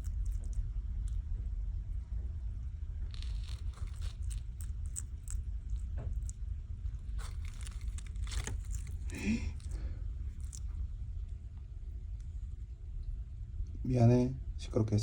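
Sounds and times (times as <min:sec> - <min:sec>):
lizard crunching mealworms: 0:00.0 - 0:01.2, 0:03.1 - 0:10.8
steady low hum: 0:00.0 - 0:15.0.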